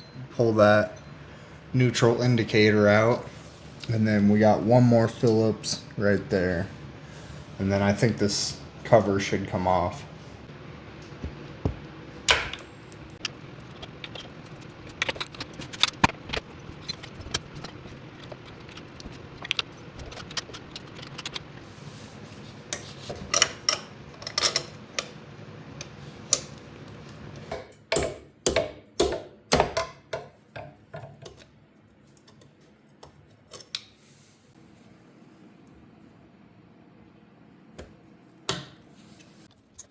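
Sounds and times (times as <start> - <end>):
metal tools and parts clinking: 12.3 - 13.3, 23.2 - 25.1.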